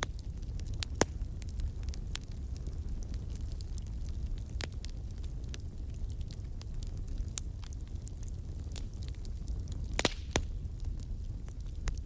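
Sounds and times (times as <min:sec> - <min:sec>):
bonfire flames rumbling: 0:00.0 - 0:12.0
fire crackles and pops: 0:00.0 - 0:12.0.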